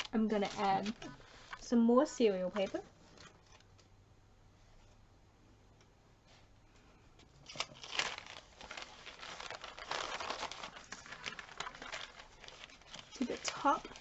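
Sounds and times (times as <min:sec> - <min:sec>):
paper rustling and crinkling: 0:00.0 - 0:01.8, 0:07.4 - 0:14.0.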